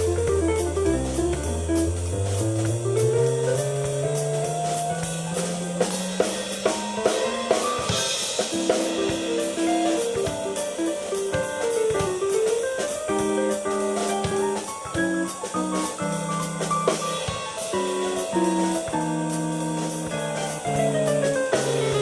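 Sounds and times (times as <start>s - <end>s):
bass line: 0.0s - 7.6s
keyboard chords and melody: 0.0s - 22.0s
snare and bass drum hits: 0.0s - 22.0s
cymbal crash: 5.4s - 9.5s.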